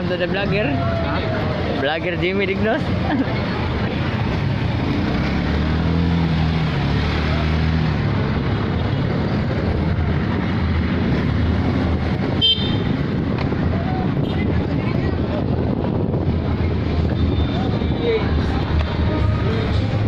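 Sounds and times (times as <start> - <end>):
road traffic noise: 0.0 - 20.0.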